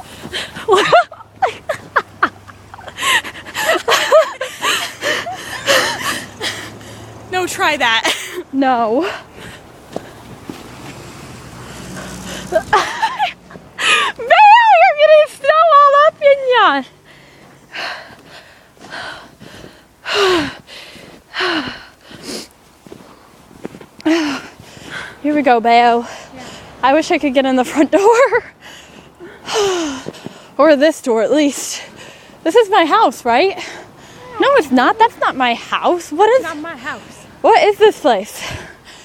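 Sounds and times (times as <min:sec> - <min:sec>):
heavy panting breaths: 0:03.0 - 0:07.3, 0:09.0 - 0:10.3, 0:11.5 - 0:12.6, 0:16.9 - 0:23.3, 0:24.0 - 0:25.2, 0:26.0 - 0:26.8, 0:28.5 - 0:30.6, 0:31.6 - 0:32.4, 0:33.4 - 0:34.6, 0:38.2 - 0:39.0.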